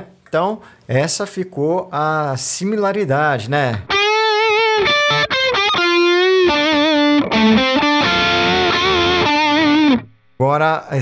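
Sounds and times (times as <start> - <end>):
overdriven electric guitar lead: 3.7 - 10.2.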